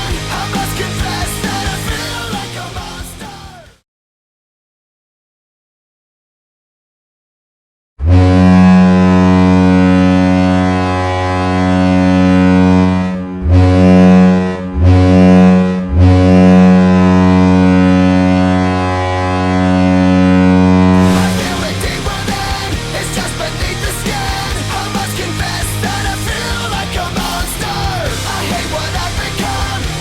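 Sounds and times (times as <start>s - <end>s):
rock song: 0.0s - 3.8s, 20.9s - 30.0s
ship-style goal horn blasts: 8.0s - 21.7s.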